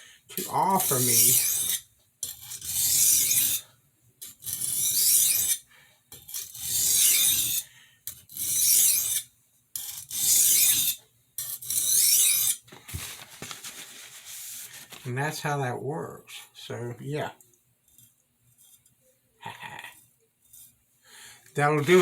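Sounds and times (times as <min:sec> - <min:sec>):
knife scraping on whetstone: 0:00.4 - 0:12.6, 0:17.9 - 0:19.0, 0:19.9 - 0:20.8, 0:21.7 - 0:22.0.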